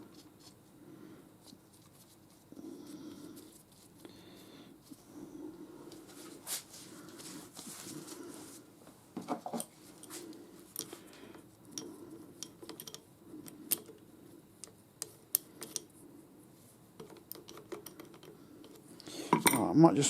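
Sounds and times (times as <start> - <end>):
faint steady hum: 0.0 - 20.0
metal parts clicking and tapping: 11.8 - 13.0, 13.7 - 14.0, 14.6 - 15.9, 17.0 - 19.7.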